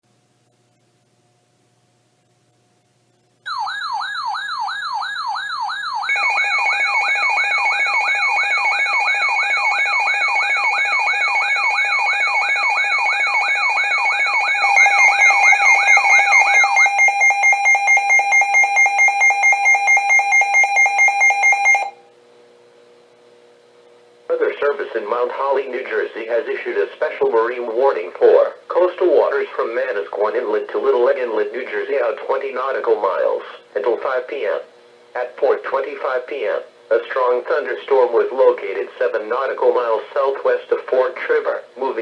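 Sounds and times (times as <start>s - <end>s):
electronic siren-like warble: 3.5s - 22.0s
loud rapid alarm beeping: 3.5s - 22.0s
steady electronic tones: 14.5s - 22.0s.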